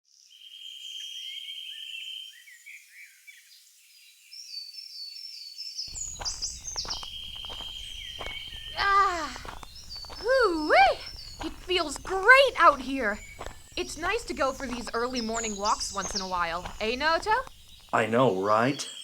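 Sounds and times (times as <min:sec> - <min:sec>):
high insect trill: 0:05.9 - 0:18.1
birds chirping: 0:05.9 - 0:19.0.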